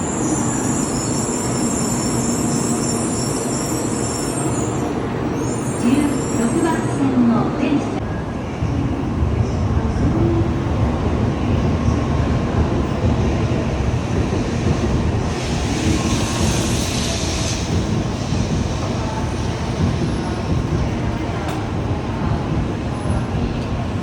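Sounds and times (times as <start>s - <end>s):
train rumbling past: 0.0s - 24.0s
hiss: 15.3s - 19.0s.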